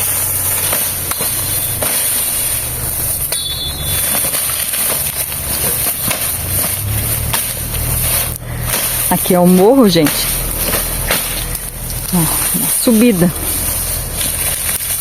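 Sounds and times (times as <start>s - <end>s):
footsteps through dry leaves: 0.0s - 15.0s
steady high hiss: 0.0s - 15.0s
short high whistle: 3.2s - 4.3s.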